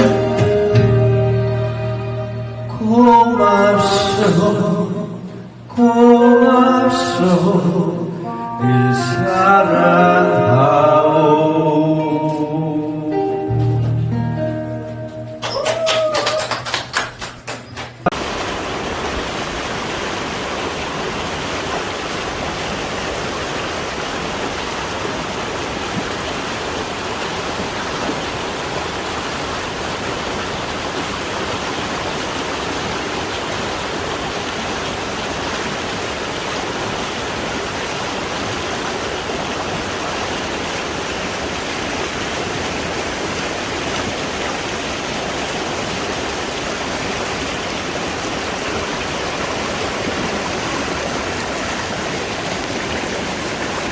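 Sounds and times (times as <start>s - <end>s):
stream rushing: 0.0s - 5.7s, 18.0s - 53.9s.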